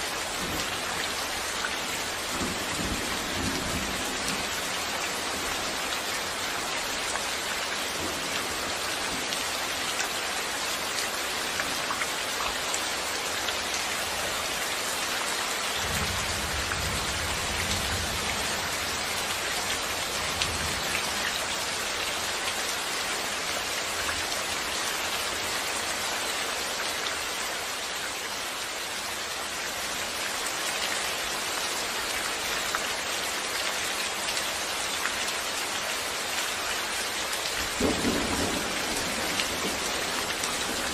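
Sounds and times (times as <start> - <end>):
heavy rain falling: 0.0 - 40.9.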